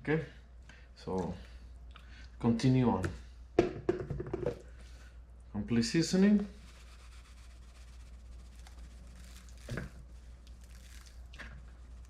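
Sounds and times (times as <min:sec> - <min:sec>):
low steady hum: 0:00.0 - 0:12.0
squishing of raw chicken: 0:07.7 - 0:12.0.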